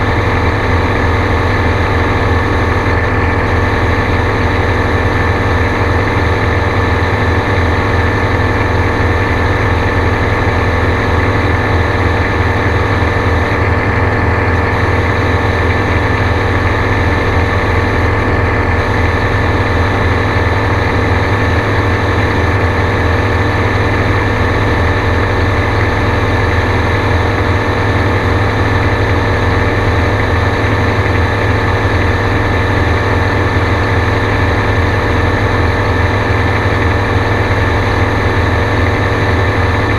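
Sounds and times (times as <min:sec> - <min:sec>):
gyrocopter engine drone: 0:00.0 - 0:39.9.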